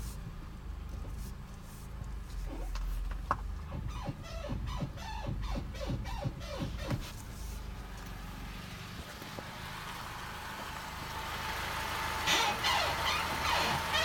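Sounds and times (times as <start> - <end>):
car road noise: 0.0 - 14.0
car squeaking and squealing: 2.3 - 7.8, 12.0 - 14.0.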